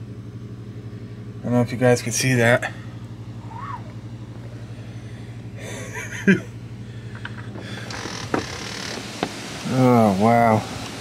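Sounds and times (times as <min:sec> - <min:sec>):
low engine hum: 0:00.0 - 0:11.0
rain hiss: 0:07.6 - 0:11.0.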